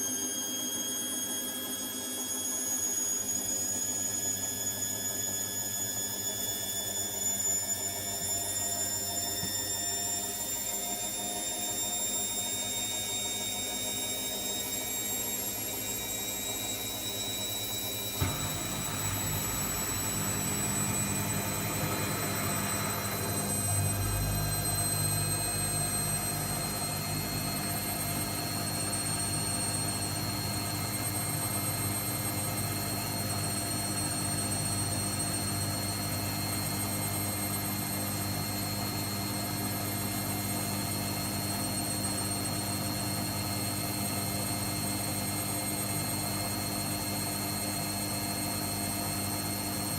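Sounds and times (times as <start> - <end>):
washing machine spinning: 4.7 - 41.3.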